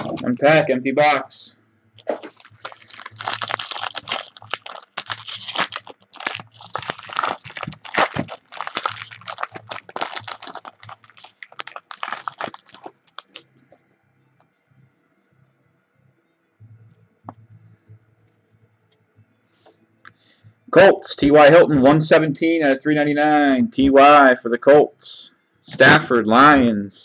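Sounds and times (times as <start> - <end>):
plastic wrapper tearing and crinkling: 0.0 - 0.2, 2.0 - 13.6.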